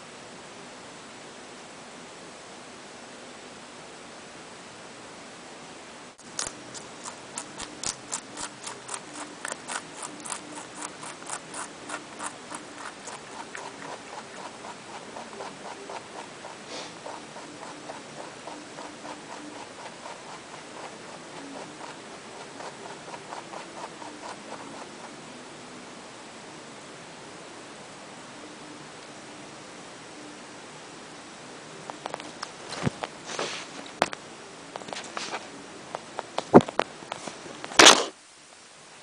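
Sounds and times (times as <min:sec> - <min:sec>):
rabbit chewing crunchily: 0:06.2 - 0:25.5, 0:34.8 - 0:38.2.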